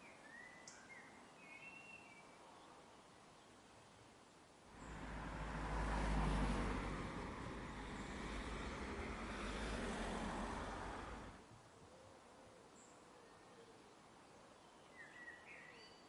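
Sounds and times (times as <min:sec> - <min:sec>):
car passing on road: 0:04.7 - 0:11.4.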